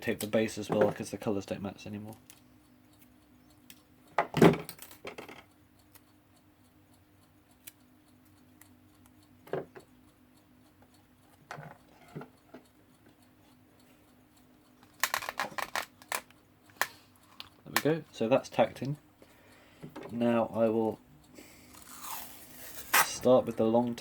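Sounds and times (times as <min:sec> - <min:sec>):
adhesive tape tearing: 0:21.8 - 0:23.3.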